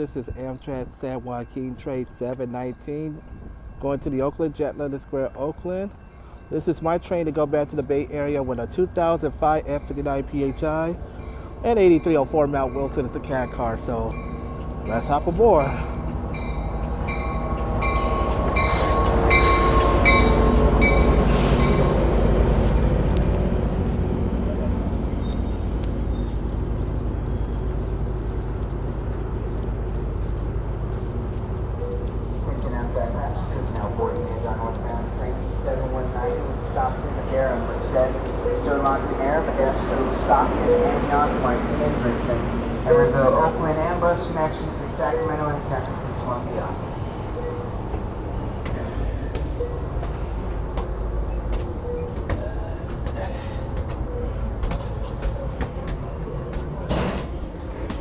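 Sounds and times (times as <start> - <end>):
passenger train rumbling: 0.0 - 58.0
diesel locomotive idling: 0.1 - 58.0.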